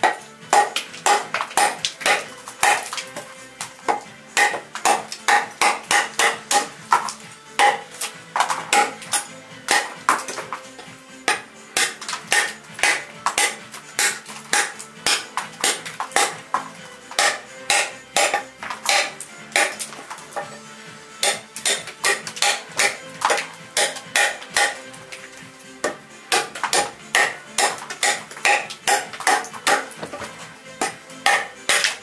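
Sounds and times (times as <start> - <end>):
background music: 0.0 - 32.0.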